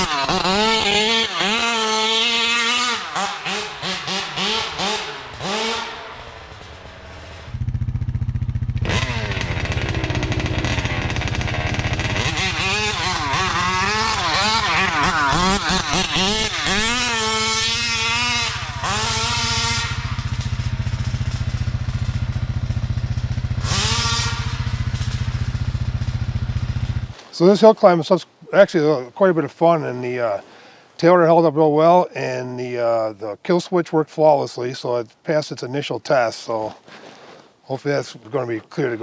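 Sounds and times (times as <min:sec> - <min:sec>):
small engine revving: 0:00.0 - 0:27.2.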